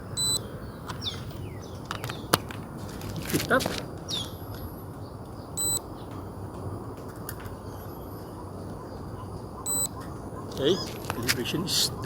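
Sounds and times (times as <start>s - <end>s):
high electronic beep: 0.1s - 0.4s, 5.6s - 5.8s, 9.7s - 9.9s.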